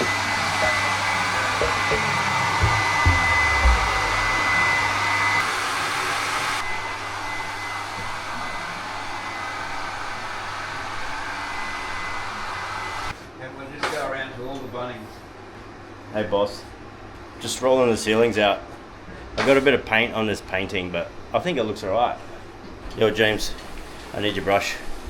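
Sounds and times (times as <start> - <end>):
thin high whine: 0.0 - 5.5
electric motor whooshing drone: 0.0 - 6.7
low thumps: 1.6 - 5.4.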